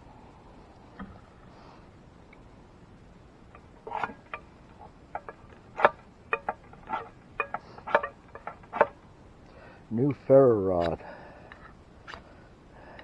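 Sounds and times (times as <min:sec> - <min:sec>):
hard objects clicking and knocking: 0:03.5 - 0:09.0.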